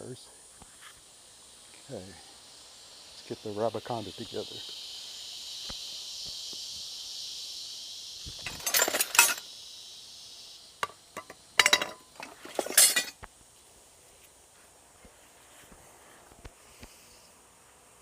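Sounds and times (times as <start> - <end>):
high insect drone: 0.0 - 18.0
steel parts clanking together: 8.4 - 9.4, 11.2 - 13.2.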